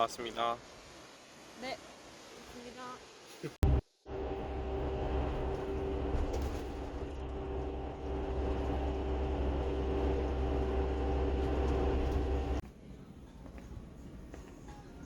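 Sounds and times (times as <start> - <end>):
moving vehicle rumble: 3.6 - 12.6
steady hum tones: 3.6 - 14.8.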